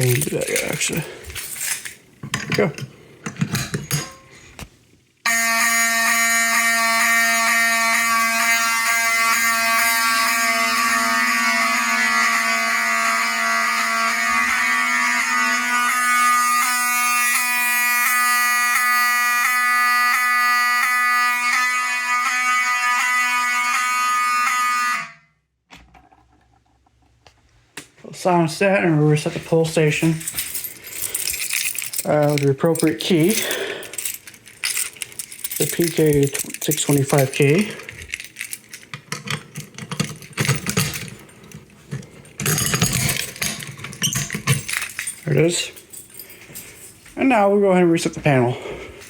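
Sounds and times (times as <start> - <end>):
buzzing fire alarm horn: 5.2 - 25.5.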